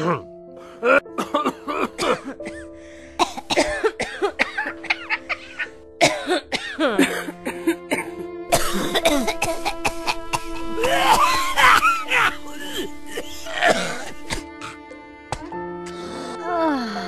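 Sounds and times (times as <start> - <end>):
background music with held notes: 0.0 - 17.0
person coughing: 0.8 - 2.6, 3.2 - 14.5.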